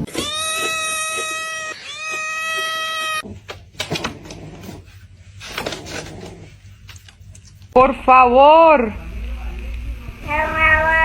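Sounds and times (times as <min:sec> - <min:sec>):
cat meowing: 0:00.0 - 0:03.2.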